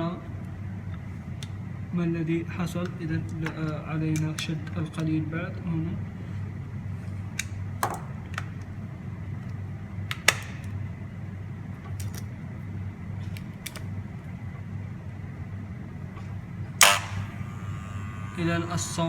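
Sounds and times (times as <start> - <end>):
sharp metal clicks: 16.8 - 17.3
hair clipper buzzing: 16.8 - 19.0.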